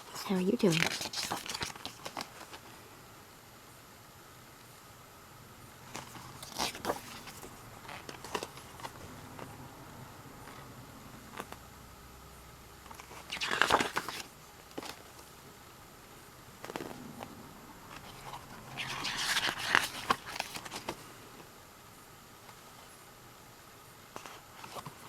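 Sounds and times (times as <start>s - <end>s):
cd packaging clicks and rustles: 0.0s - 2.7s, 5.8s - 9.6s, 11.3s - 11.7s, 12.8s - 15.6s, 16.6s - 17.3s, 17.9s - 21.5s, 24.1s - 25.0s.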